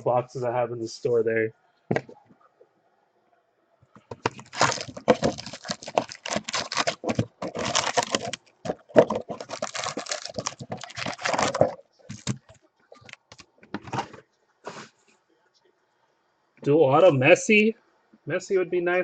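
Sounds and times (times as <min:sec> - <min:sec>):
plastic crinkles: 0:04.1 - 0:14.2
plastic wrapping tearing: 0:04.2 - 0:13.5.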